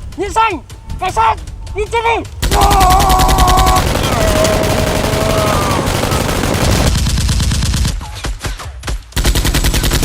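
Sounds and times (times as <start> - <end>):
rapid machine-gun gunfire: 2.4 - 10.0.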